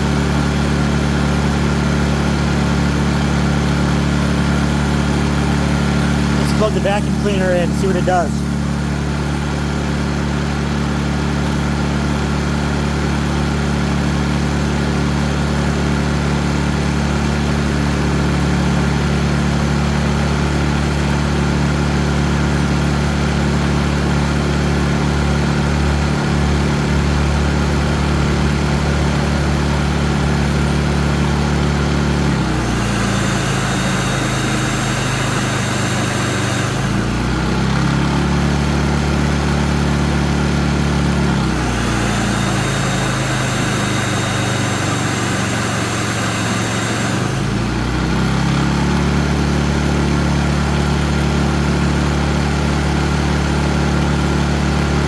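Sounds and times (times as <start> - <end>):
generator engine running: 0.0 - 55.0
vacuum cleaner whine: 5.3 - 9.1, 25.5 - 50.5.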